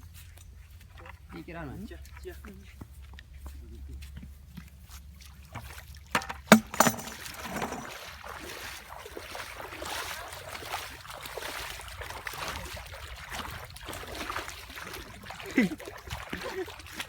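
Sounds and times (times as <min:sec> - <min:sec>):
water sloshing and splashing: 0:04.1 - 0:17.0.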